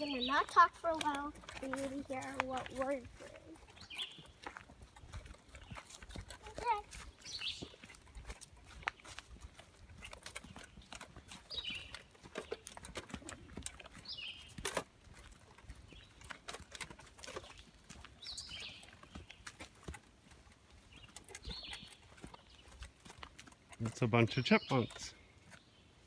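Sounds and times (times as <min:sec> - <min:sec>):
chipmunks chirping: 0:00.0 - 0:04.4, 0:06.6 - 0:07.9, 0:10.8 - 0:12.6, 0:14.0 - 0:14.6, 0:18.2 - 0:19.2, 0:20.9 - 0:22.8, 0:23.8 - 0:25.2
footsteps crunching on trail: 0:00.0 - 0:26.0.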